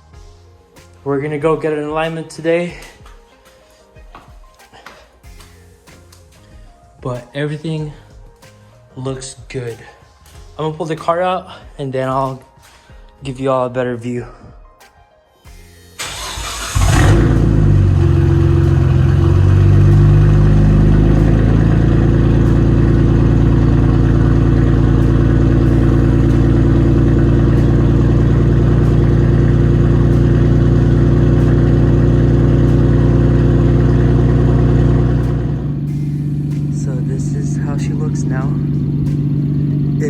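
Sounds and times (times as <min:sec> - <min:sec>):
car engine starting and idling: 0:16.0 - 0:40.0.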